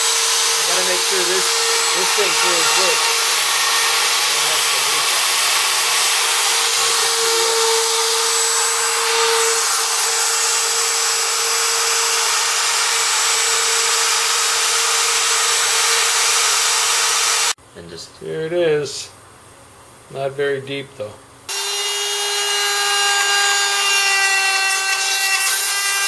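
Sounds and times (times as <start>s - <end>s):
engraving machine spindle whine: 0.0s - 17.5s.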